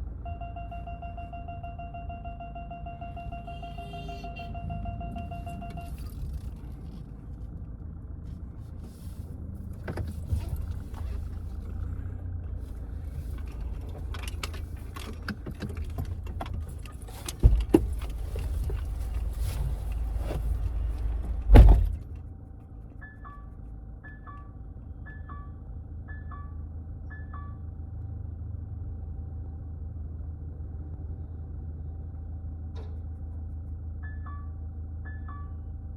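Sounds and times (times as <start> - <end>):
vehicle engine rumble: 0.0 - 35.9
clicks and rattles: 13.0 - 20.1.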